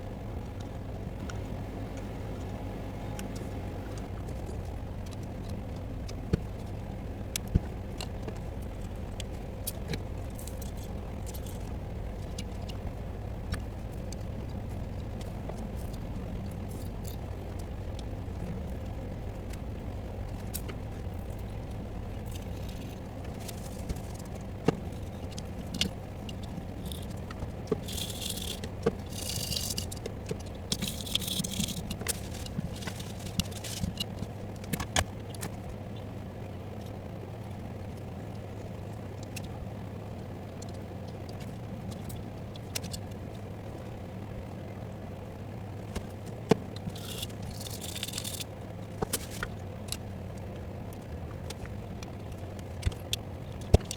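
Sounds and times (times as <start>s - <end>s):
steady low hum: 0.0s - 53.9s
hand tools clicking on circuit board: 22.4s - 35.5s, 46.6s - 50.0s.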